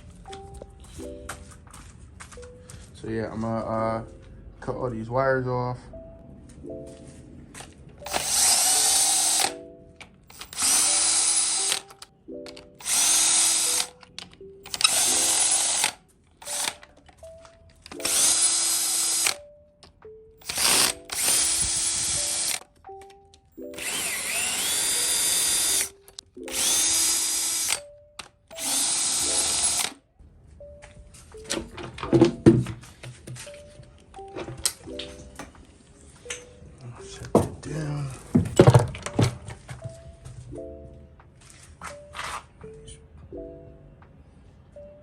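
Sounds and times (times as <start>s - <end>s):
cordless drill whining: 8.1s - 9.6s, 10.3s - 12.0s, 12.8s - 14.0s, 14.6s - 16.8s, 17.9s - 19.4s, 20.4s - 22.6s, 23.6s - 27.8s, 28.5s - 30.0s.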